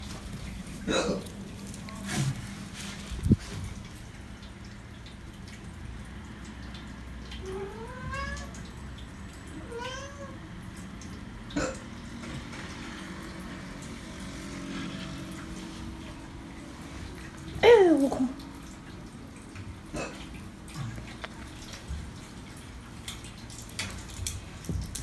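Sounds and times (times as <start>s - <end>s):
cat meowing: 7.4s - 8.6s, 9.6s - 10.4s.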